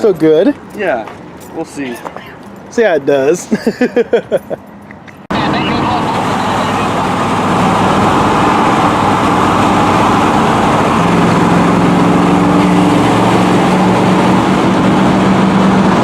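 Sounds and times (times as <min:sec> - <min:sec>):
loud steady rushing noise: 0:05.3 - 0:16.0
vehicle engine running: 0:05.3 - 0:16.0.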